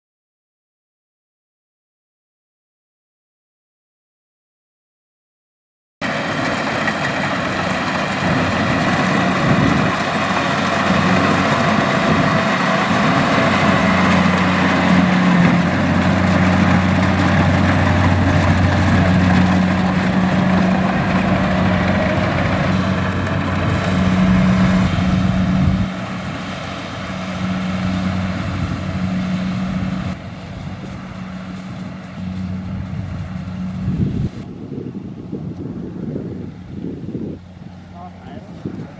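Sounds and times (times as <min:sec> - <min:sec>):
machinery noise: 0:06.0 - 0:34.5
diesel engine droning: 0:06.0 - 0:38.9.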